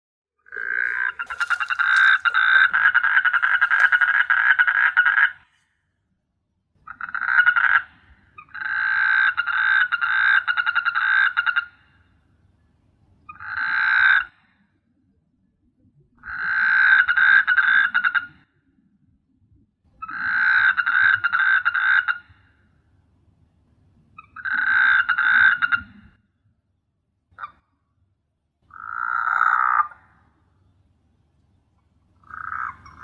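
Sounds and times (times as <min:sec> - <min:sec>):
frogs croaking: 0:00.4 - 0:05.6, 0:06.8 - 0:12.1, 0:13.3 - 0:14.4, 0:16.2 - 0:18.4, 0:20.0 - 0:22.5, 0:24.2 - 0:26.0, 0:28.6 - 0:30.6, 0:31.8 - 0:33.0.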